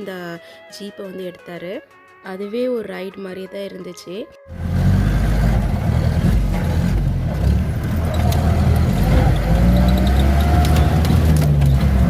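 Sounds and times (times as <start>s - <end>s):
car engine rumbling uphill: 4.5s - 12.0s
knocks and rattles: 5.3s - 12.0s.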